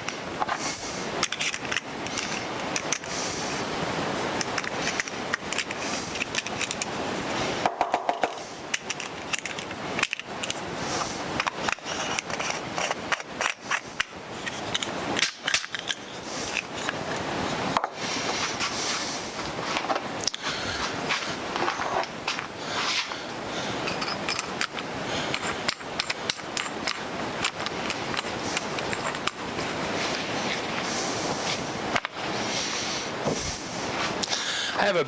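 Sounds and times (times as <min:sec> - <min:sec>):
hand brace clicks and creaks: 0:01.2 - 0:03.2, 0:04.3 - 0:06.9, 0:07.9 - 0:18.8, 0:19.4 - 0:30.9.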